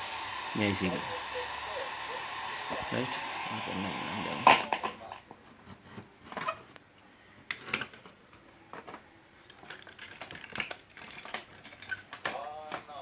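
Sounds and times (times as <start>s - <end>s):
steady hiss: 0.0s - 5.2s
small tools clicking and tapping: 8.7s - 12.9s.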